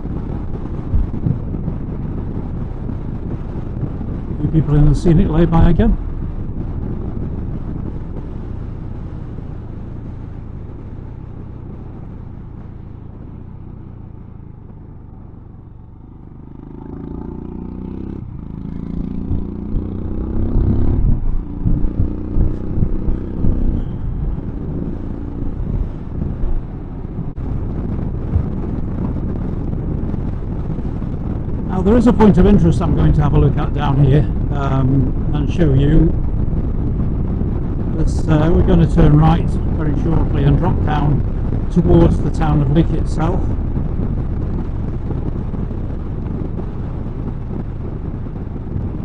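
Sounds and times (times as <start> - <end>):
motorcycle engine: 0.0 - 49.0
wind noise: 0.0 - 49.0.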